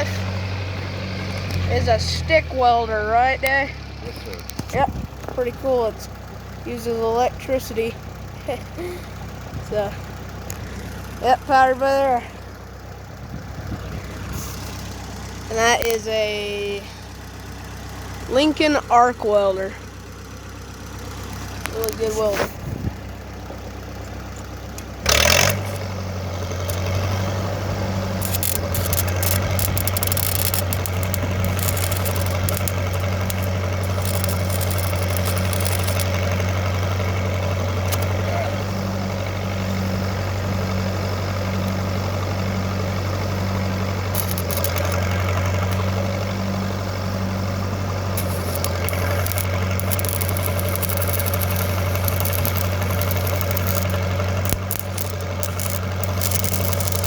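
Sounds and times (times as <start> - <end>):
engine running steadily: 0.0 - 57.0
welding arc crackling: 14.1 - 16.8, 21.2 - 22.4, 25.1 - 38.4, 43.3 - 46.2, 48.1 - 57.0.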